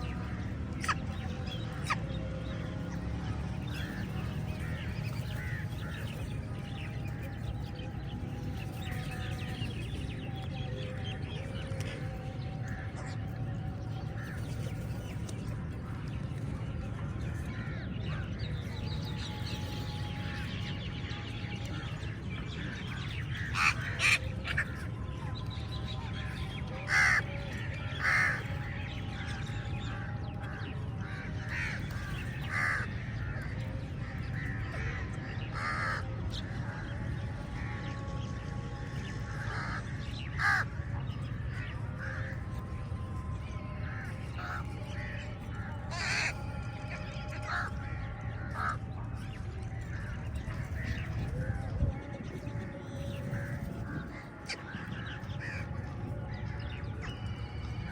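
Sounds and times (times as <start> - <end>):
crows cawing: 23.4 - 24.2, 26.9 - 27.2, 28.0 - 28.4, 31.5 - 31.8, 32.5 - 33.4, 34.4 - 36.1, 39.3 - 40.7, 43.9 - 46.3, 47.4 - 48.8.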